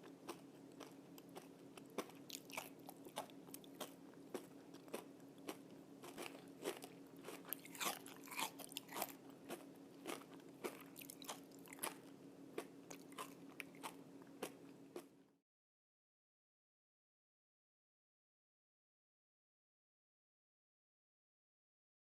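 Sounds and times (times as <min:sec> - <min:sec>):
crispy bacon crunching: 0:00.0 - 0:15.1
steady low hum: 0:00.0 - 0:15.4.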